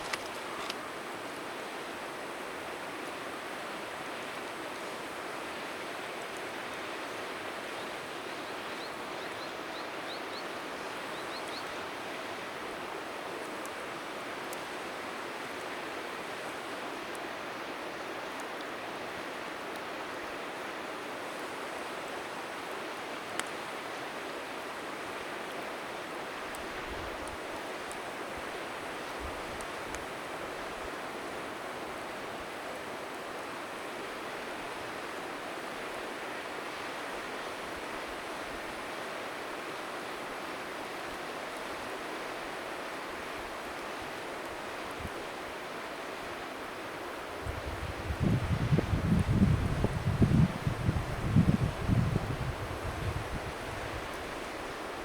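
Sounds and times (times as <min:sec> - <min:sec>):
bonfire crackling: 0:00.0 - 0:08.8, 0:11.7 - 0:36.6
river water rushing: 0:00.0 - 0:55.0
wind buffeting microphone: 0:47.4 - 0:54.1.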